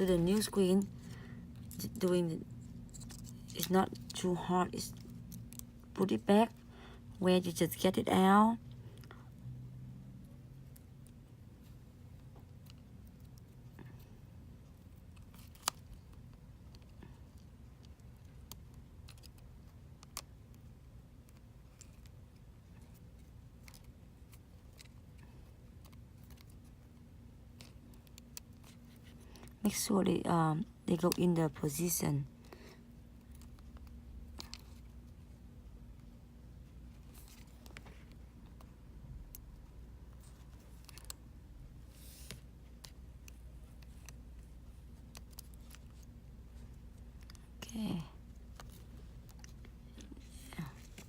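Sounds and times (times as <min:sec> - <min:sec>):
low room hum: 0:00.0 - 0:51.0.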